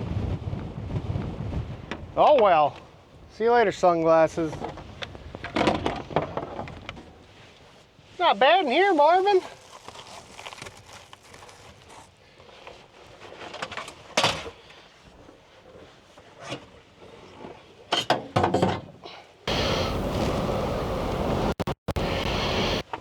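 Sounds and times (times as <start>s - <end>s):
loud rush of wind: 0.0s - 2.4s, 19.5s - 22.8s
muffled wind outside truck cab: 0.0s - 8.2s, 18.7s - 23.0s.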